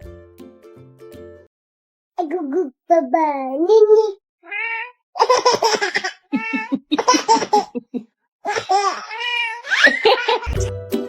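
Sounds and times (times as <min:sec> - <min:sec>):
baby laughing: 0:05.2 - 0:10.6.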